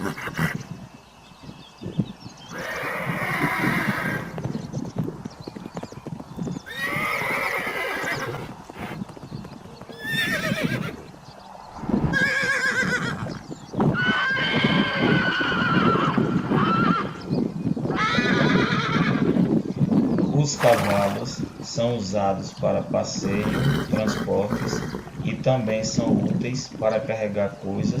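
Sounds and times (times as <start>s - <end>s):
horses neighing: 0.0s - 0.9s, 2.4s - 5.8s, 6.4s - 17.3s, 17.9s - 19.6s, 20.4s - 21.6s, 22.7s - 26.2s.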